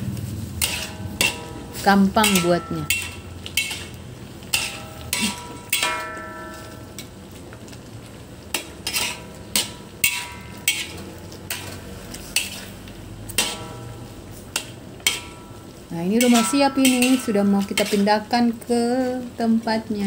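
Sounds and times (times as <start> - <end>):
utensil clinking against metal pot: 0.6 - 7.1, 8.5 - 11.8, 14.5 - 18.2.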